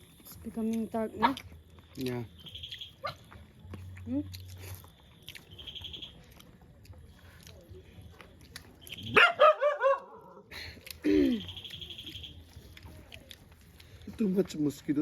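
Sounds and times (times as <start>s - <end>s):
dog barking: 3.0s - 3.4s, 9.0s - 10.4s.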